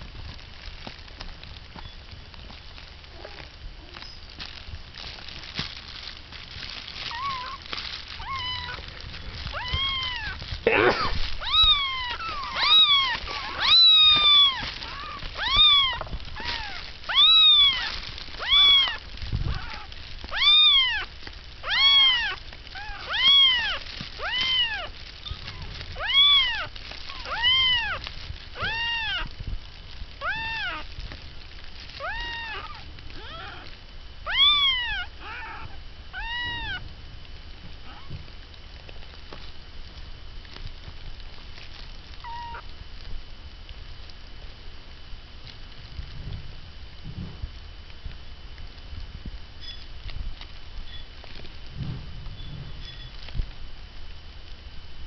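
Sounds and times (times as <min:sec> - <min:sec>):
kittens mewing: 0:07.0 - 0:29.4, 0:30.2 - 0:31.0, 0:31.9 - 0:36.9, 0:37.8 - 0:38.2, 0:42.2 - 0:42.7.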